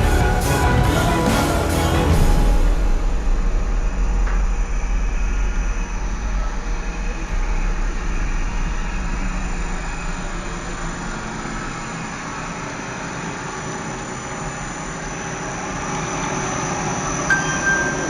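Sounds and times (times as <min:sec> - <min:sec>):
machinery rumble with hiss: 0:00.0 - 0:17.9.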